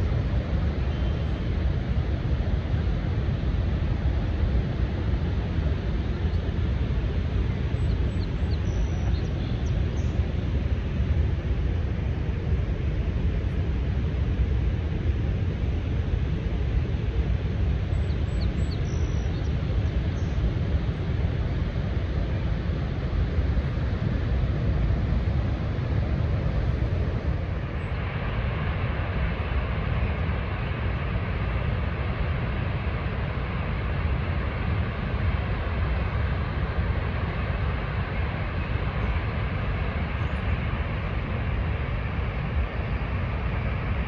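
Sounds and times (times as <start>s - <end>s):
waterfall roaring: 23.0s - 44.0s.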